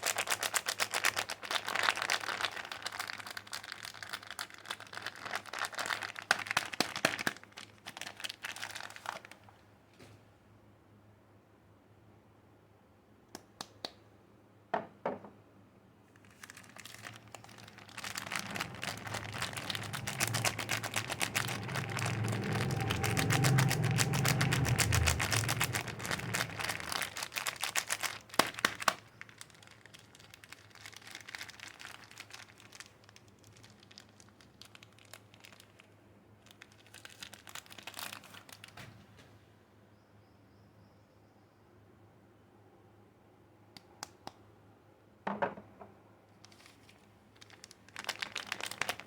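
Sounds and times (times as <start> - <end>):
wrapper crinkling: 0.0 - 9.6, 16.1 - 38.9, 46.4 - 49.0
sharp snaps: 13.3 - 14.1, 43.7 - 44.5.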